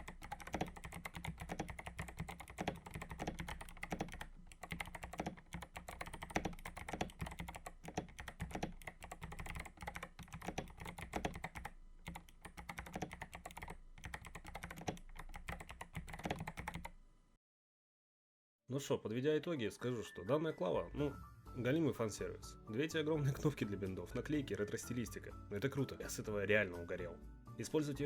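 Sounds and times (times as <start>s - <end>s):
mechanical keyboard key clicks: 0.0s - 16.8s.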